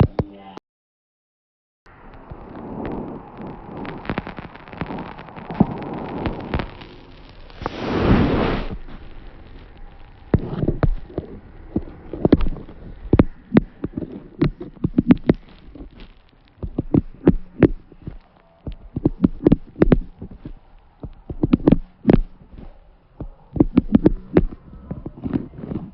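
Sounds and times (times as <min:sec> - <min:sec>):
rushing noise burst: 0:01.9 - 0:24.5
sharp clicks and taps: 0:10.3 - 0:25.8.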